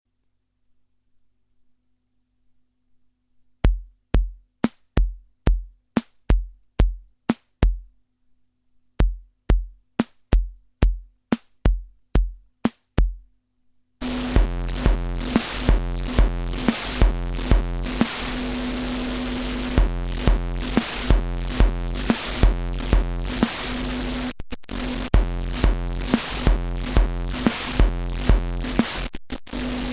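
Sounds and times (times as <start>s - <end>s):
drum machine beat: 3.6s - 7.9s, 9.0s - 13.3s, 14.0s - 29.6s
sustained analog synthesizer: 14.0s - 28.8s.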